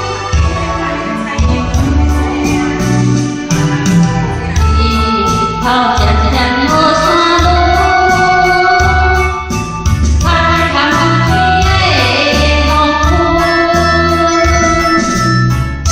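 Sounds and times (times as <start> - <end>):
backing track with bass beat: 0.0 - 15.9
woman singing: 3.7 - 9.2, 10.2 - 15.2.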